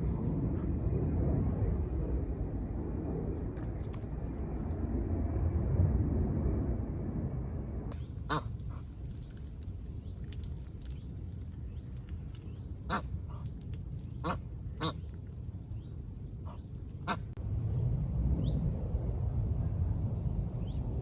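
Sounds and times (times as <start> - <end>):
low background rumble: 0.0 - 21.0
ducks quacking: 8.2 - 8.8, 16.5 - 17.3.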